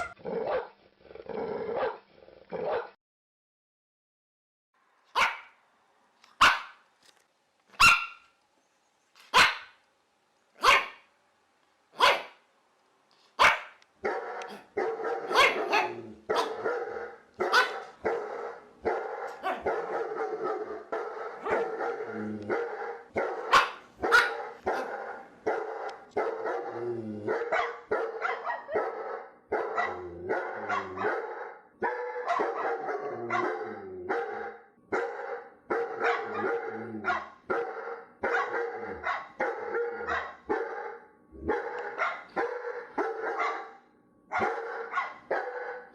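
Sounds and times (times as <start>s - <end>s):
dog barking: 2.6s - 3.0s, 5.1s - 5.6s, 6.4s - 6.8s, 7.8s - 8.3s, 9.3s - 9.8s, 10.6s - 11.1s, 12.0s - 12.4s, 13.4s - 26.7s, 27.3s - 45.9s
overlapping barking: 5.1s - 5.6s, 6.3s - 6.8s, 7.7s - 8.3s, 9.3s - 9.8s, 10.6s - 11.1s, 11.9s - 12.4s, 13.4s - 45.9s.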